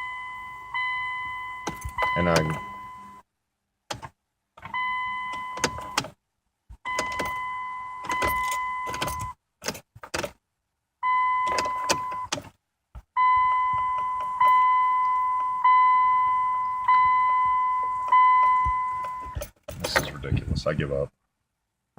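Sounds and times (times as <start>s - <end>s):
car warning chime beeping: 0.0s - 3.3s, 4.7s - 6.1s, 6.8s - 9.4s, 11.0s - 12.4s, 13.1s - 19.5s.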